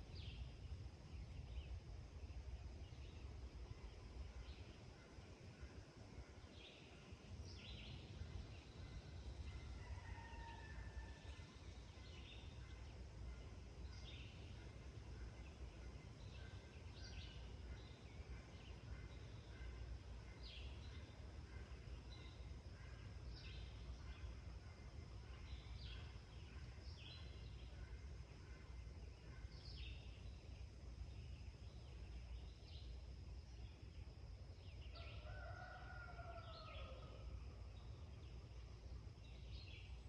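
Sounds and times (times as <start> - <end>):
distant songbirds chirping: 0.0 - 40.0.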